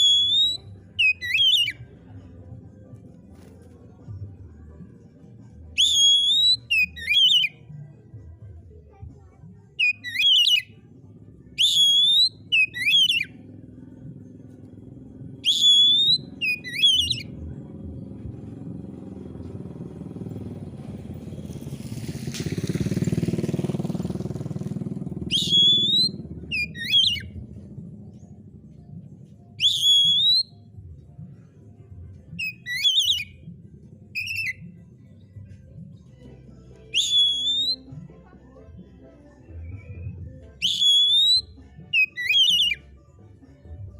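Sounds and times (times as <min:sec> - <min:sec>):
bird whistling song: 0:00.0 - 0:02.0, 0:05.8 - 0:07.7, 0:09.8 - 0:10.8, 0:11.6 - 0:13.5, 0:15.4 - 0:17.6, 0:24.9 - 0:28.4, 0:29.6 - 0:30.8, 0:32.4 - 0:36.0, 0:36.9 - 0:38.1, 0:39.6 - 0:42.8
low rumble: 0:17.1 - 0:29.6.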